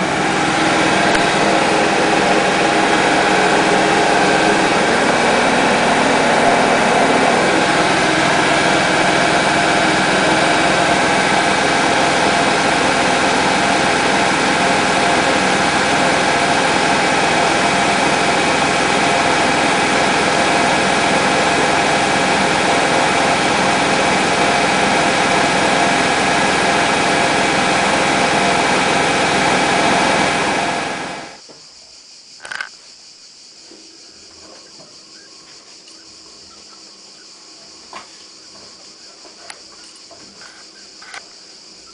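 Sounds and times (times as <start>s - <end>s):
washing machine spinning: 0.0s - 31.4s.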